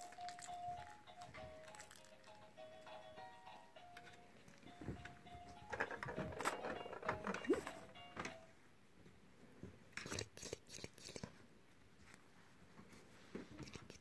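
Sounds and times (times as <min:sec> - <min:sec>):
sharp clicks and rattles: 0:05.0 - 0:07.5.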